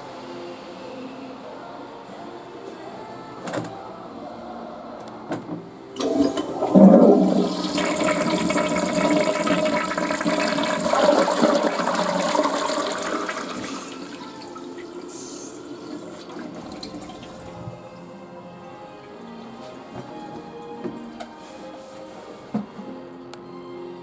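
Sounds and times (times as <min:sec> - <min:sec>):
toilet flushing: 0:05.3 - 0:20.4
water running hiss: 0:06.0 - 0:18.1.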